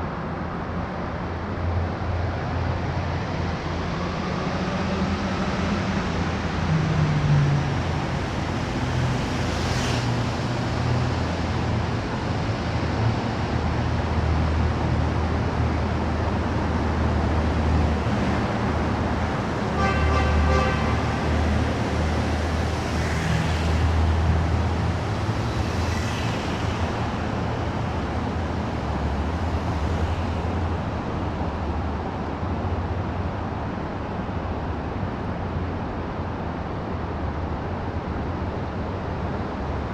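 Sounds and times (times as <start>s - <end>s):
vehicle traffic rumble: 0.0s - 39.9s.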